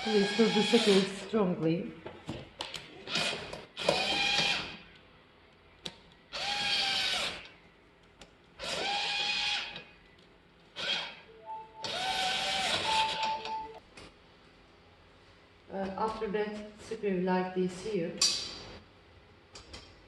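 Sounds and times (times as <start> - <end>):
power drill driving screws: 0.0 - 1.2, 3.0 - 4.8, 6.4 - 7.5, 8.6 - 9.8, 11.8 - 13.1.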